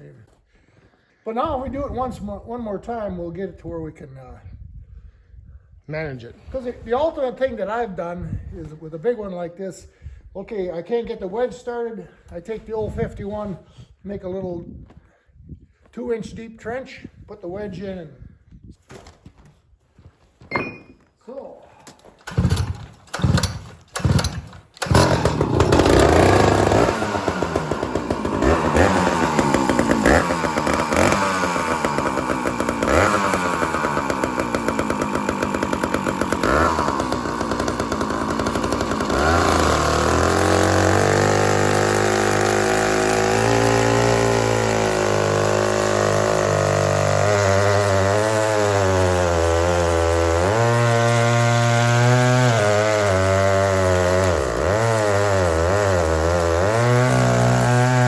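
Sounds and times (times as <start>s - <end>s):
chainsaw pull-start: 21.9s - 58.0s
chainsaw cutting wood: 22.1s - 58.0s.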